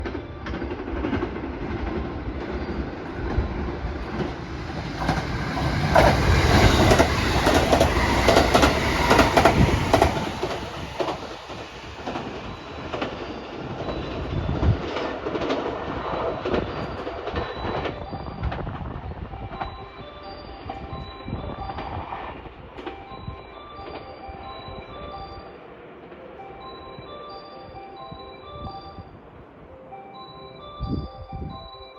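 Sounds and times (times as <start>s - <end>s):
wheels clicking over rail joints: 0.0s - 19.9s
electric train passing at speed: 0.0s - 31.9s.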